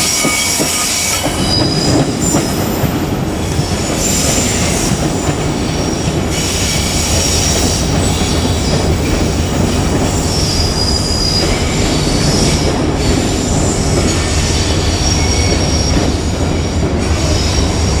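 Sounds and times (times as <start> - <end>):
electric train rumbling past: 0.0 - 18.0.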